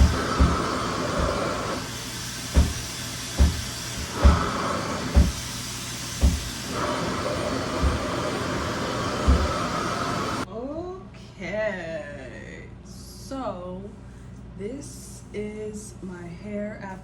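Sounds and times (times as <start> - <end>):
hair dryer airflow hiss: 0.0 - 10.5.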